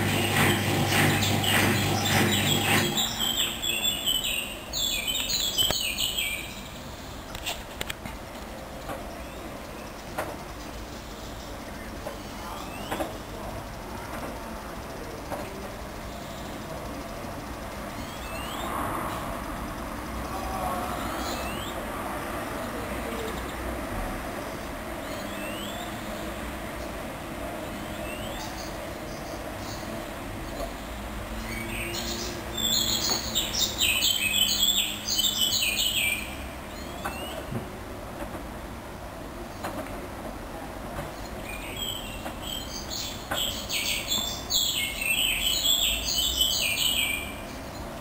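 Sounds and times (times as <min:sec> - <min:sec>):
washing machine motor hum: 0:00.0 - 0:03.6.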